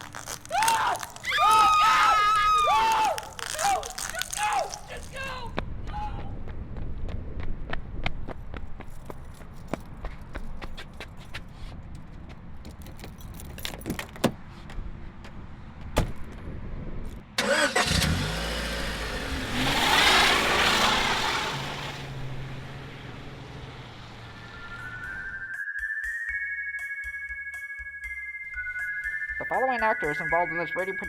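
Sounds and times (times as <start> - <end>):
car engine starting and revving: 17.4 - 25.3.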